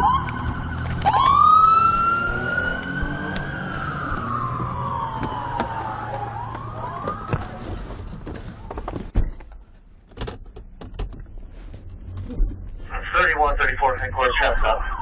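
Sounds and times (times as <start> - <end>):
police siren wailing: 0.0 - 8.2, 12.9 - 15.0
vehicle rumble: 0.0 - 15.0.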